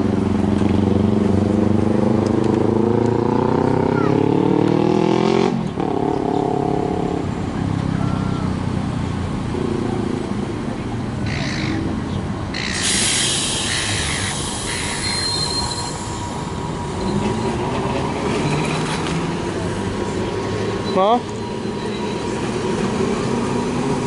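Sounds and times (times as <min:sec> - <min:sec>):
tram rumble: 0:00.0 - 0:04.1, 0:05.4 - 0:24.0
high wheel squeal: 0:12.5 - 0:19.5, 0:20.4 - 0:23.1
steel wheels grinding on track: 0:12.6 - 0:24.0.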